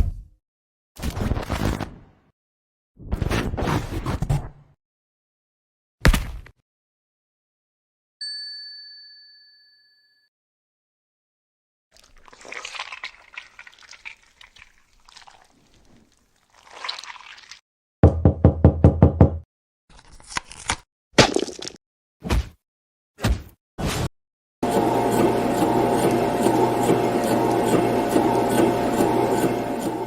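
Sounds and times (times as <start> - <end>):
clear ringing tone: 8.2 - 10.3.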